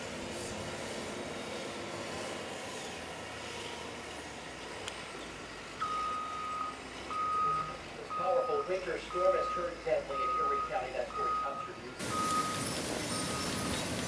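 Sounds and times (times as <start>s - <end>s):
steady background noise: 0.0s - 14.0s
vehicle backup alarm beeping: 5.8s - 14.0s.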